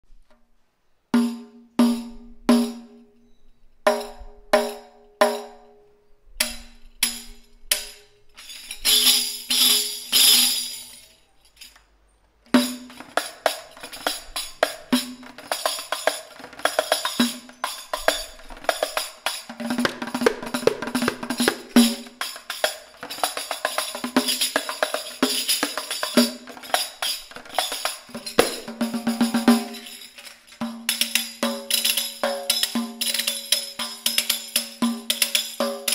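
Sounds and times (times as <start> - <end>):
cymbal jingles shaken: 6.4 - 11.9, 12.6 - 35.9
frame drum strokes: 12.6 - 35.9.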